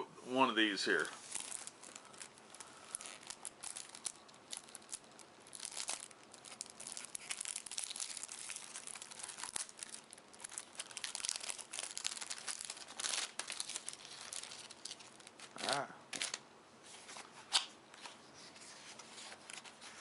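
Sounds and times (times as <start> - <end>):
packaging crinkling and tearing: 1.0 - 16.4.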